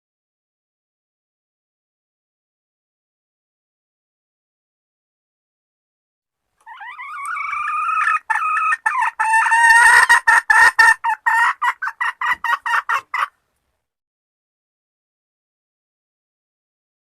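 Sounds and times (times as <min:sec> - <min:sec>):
junglefowl hen clucking call: 0:06.6 - 0:13.4.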